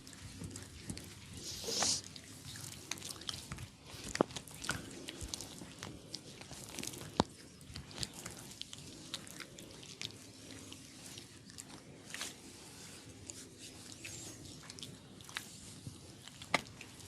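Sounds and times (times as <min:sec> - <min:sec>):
hands massaging crackling: 0:01.0 - 0:02.1, 0:02.9 - 0:17.0.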